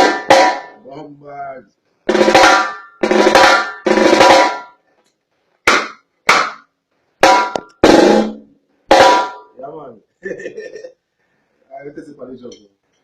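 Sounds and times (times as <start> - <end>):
snare drum rolls: 2.1 - 4.7.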